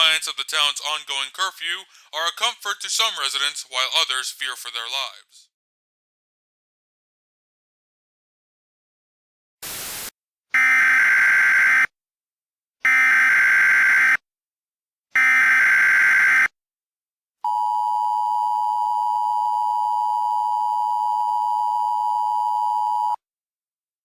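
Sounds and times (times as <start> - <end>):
burst of static: 9.6 - 10.1.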